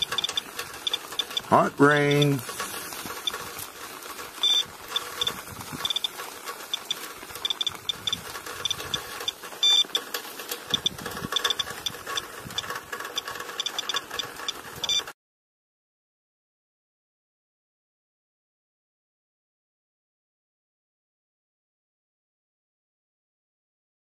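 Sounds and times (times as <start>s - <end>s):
radiation counter beeping: 0.0s - 3.5s, 4.4s - 10.1s, 10.7s - 15.1s
radiation counter clicks: 0.0s - 15.1s.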